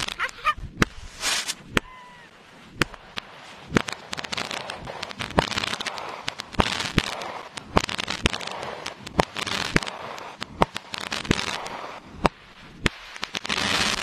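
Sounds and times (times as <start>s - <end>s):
fireworks banging: 0.0s - 14.0s
fireworks crackling: 0.0s - 14.0s.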